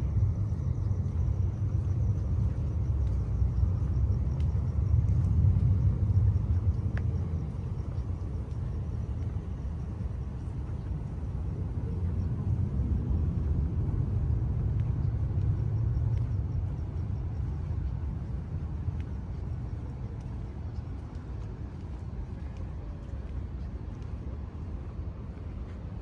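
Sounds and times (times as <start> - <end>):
city ambience: 0.0 - 26.0
vehicle passing with low rumble: 10.4 - 22.4.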